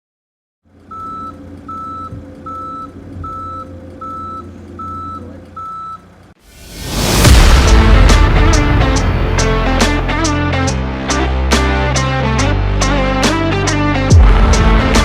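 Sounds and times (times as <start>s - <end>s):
truck engine running: 0.6s - 6.4s, 7.2s - 15.0s
truck reversing alarm beeps: 0.9s - 6.1s.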